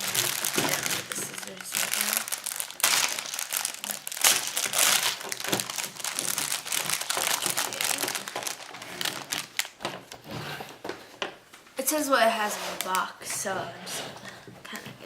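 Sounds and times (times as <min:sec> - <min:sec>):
packaging crinkling and crackling: 0:00.0 - 0:11.4.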